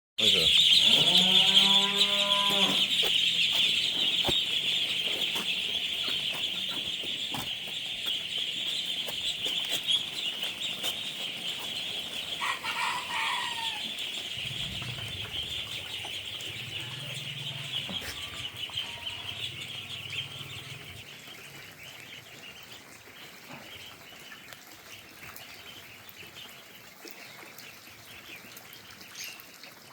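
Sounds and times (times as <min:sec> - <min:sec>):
loud duckling call: 0:00.2 - 0:07.6, 0:12.4 - 0:15.0
ducklings peeping: 0:00.2 - 0:29.6.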